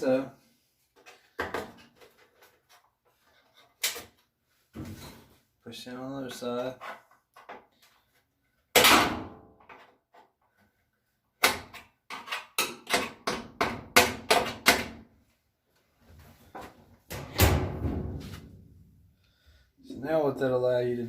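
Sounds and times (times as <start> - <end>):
metal panel knocks and rattles: 17.1 - 18.4.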